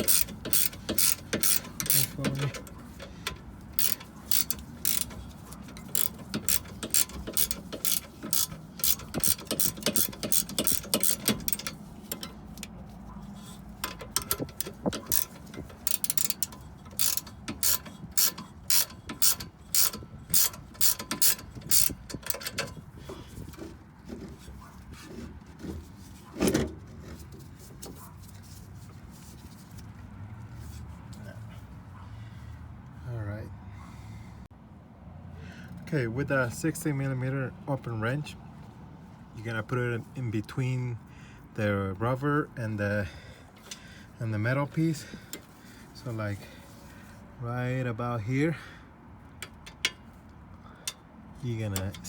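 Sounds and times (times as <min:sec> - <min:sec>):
ratchet wrench clicking: 0:00.0 - 0:12.8, 0:13.8 - 0:22.9, 0:49.4 - 0:50.0.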